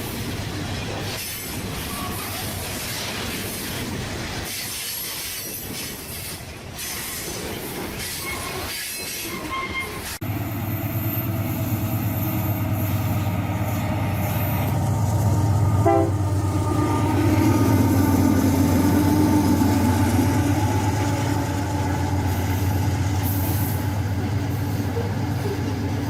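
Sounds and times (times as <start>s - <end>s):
train rolling: 0.0s - 26.0s
train wheel squeals: 0.8s - 3.8s, 4.4s - 10.2s
locomotive engine drone: 10.2s - 26.0s.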